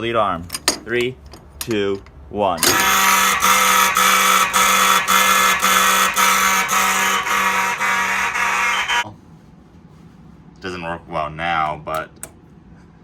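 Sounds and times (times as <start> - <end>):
pulsed fire alarm horn: 2.7 - 9.0.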